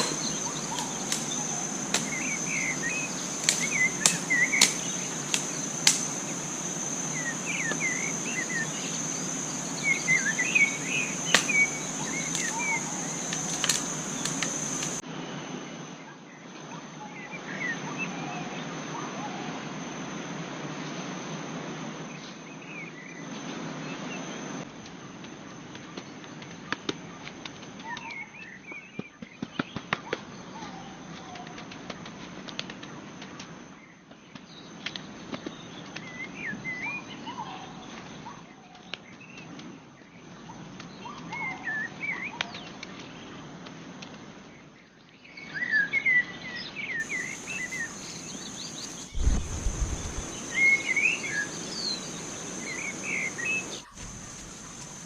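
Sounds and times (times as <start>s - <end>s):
bird chirping: 0.0s - 15.0s, 47.0s - 55.0s
insect drone: 0.0s - 15.0s, 47.0s - 55.0s
sharp clicks: 0.0s - 15.0s.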